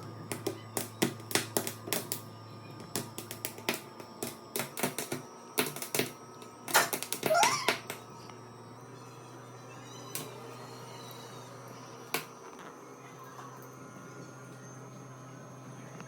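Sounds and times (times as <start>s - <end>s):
corn kernels crackling over flame: 0.0s - 2.3s, 2.9s - 8.0s.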